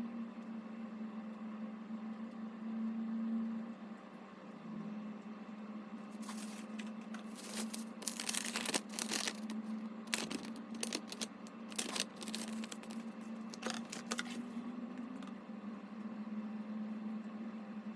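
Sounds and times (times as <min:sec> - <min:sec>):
steady low hum: 0:05.8 - 0:17.1
packaging crinkling and rustling: 0:06.2 - 0:14.6.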